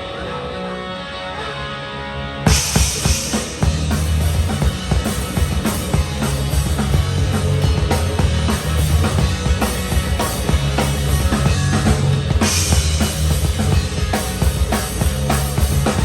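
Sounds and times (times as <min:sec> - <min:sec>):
live rock band playing: 0:02.4 - 0:16.0
cymbal crash: 0:02.5 - 0:06.0.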